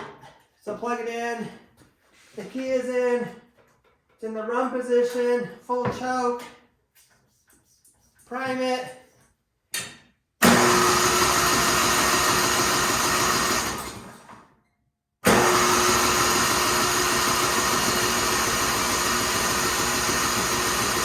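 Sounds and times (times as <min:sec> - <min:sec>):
starter motor cranking engine: 0:10.4 - 0:14.3, 0:15.2 - 0:21.0.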